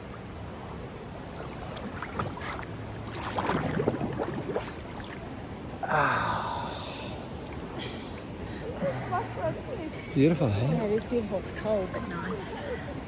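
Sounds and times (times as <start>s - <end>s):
river water running over rocks: 0.0s - 13.0s
swimmers' voices: 4.5s - 13.0s.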